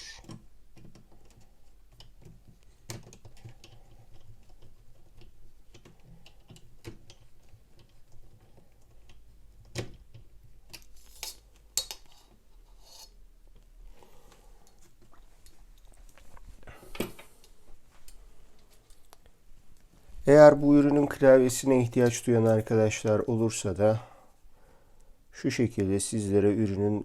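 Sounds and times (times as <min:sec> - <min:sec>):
laptop parts clicking and tapping: 0:00.2 - 0:10.9.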